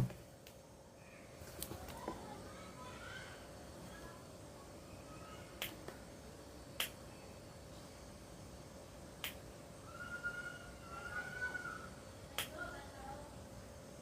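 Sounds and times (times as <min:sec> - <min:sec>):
faint room hiss: 0:00.0 - 0:14.0
sharp single clicks: 0:05.6 - 0:06.0, 0:06.8 - 0:07.0, 0:09.2 - 0:09.4, 0:12.4 - 0:12.6.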